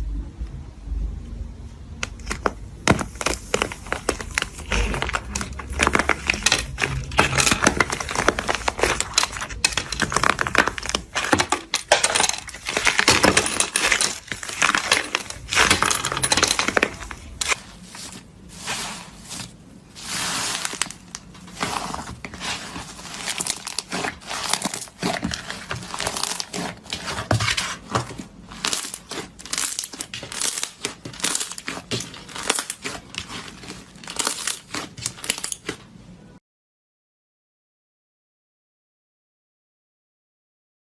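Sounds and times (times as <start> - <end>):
slime crackling and popping: 2.0 - 35.8.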